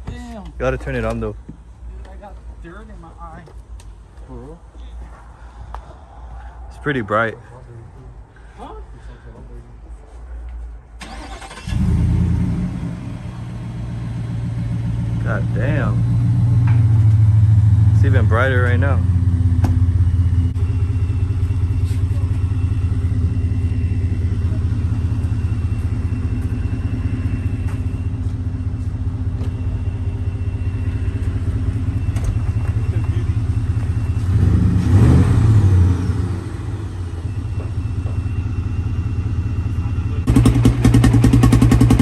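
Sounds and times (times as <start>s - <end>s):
vehicle engine droning: 11.0s - 42.0s.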